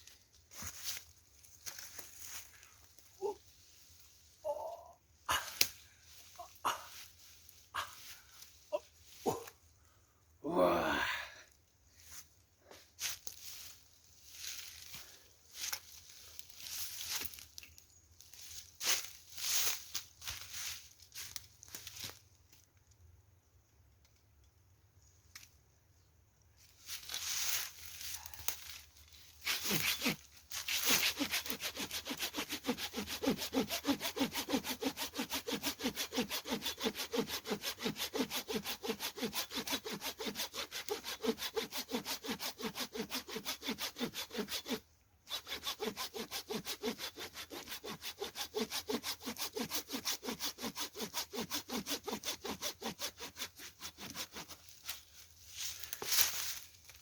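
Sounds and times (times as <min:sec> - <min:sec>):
hand saw cutting wood: 0:29.4 - 0:55.0.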